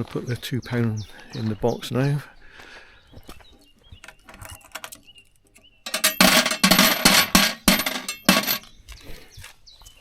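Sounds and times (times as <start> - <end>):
coins clinking into payment box: 5.9 - 8.7.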